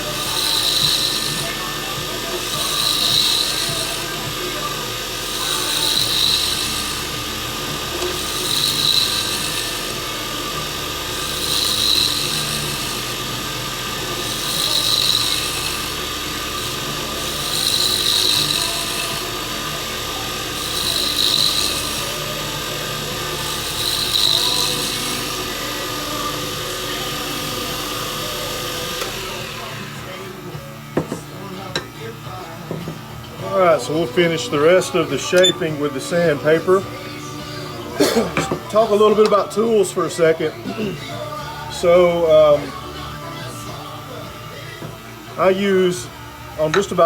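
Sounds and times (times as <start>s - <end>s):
turning tool scraping wood: 0.0s - 30.4s
wood lathe running: 0.0s - 47.0s.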